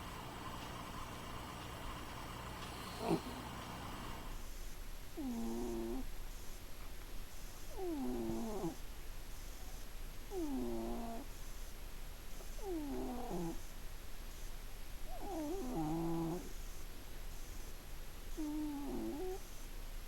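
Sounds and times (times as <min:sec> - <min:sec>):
cat snoring: 0:00.0 - 0:04.5, 0:05.2 - 0:06.1, 0:07.6 - 0:08.8, 0:10.3 - 0:11.5, 0:12.5 - 0:13.7, 0:15.1 - 0:16.8, 0:18.3 - 0:19.6.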